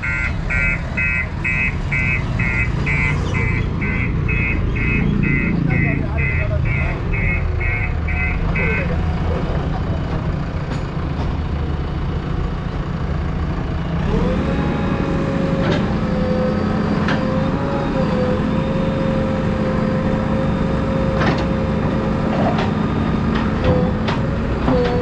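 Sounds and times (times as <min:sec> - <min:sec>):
diesel engine revving with whine: 0:00.0 - 0:10.6, 0:11.2 - 0:25.0.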